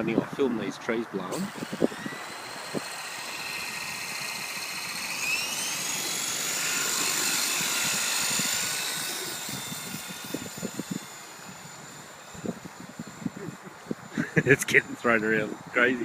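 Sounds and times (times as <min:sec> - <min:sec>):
rc helicopter motor whining: 0:01.3 - 0:16.0.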